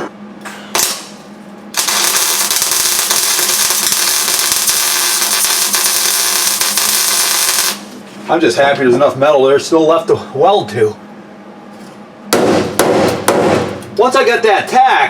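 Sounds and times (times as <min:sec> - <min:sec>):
welder crackling buzz: 0:00.7 - 0:08.0.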